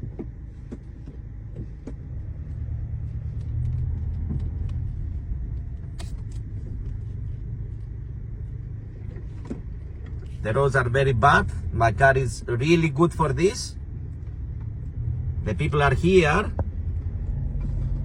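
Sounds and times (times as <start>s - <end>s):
car driving on rough road: 0.0s - 18.0s.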